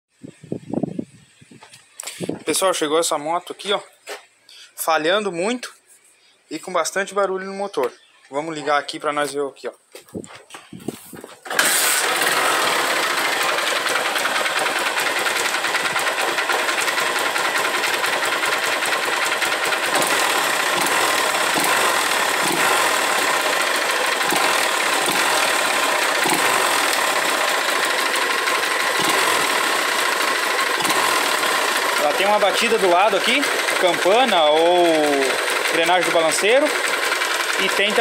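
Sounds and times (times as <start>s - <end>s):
motorcycle engine rattling: 10.8s - 38.0s
engine knock: 11.5s - 38.0s.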